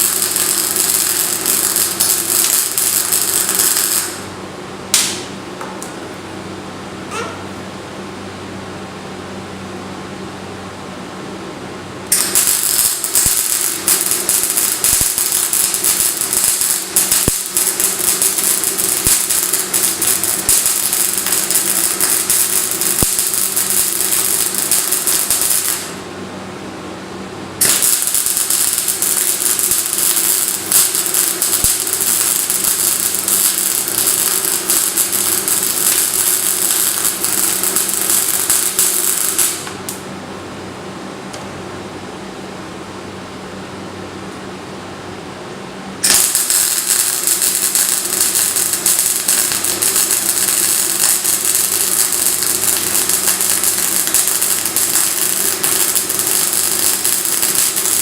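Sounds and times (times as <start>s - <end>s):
welding arc crackling: 0.0s - 4.3s, 4.9s - 5.4s, 12.1s - 26.1s, 27.6s - 40.0s, 46.0s - 58.0s
steady low hum: 0.0s - 58.0s.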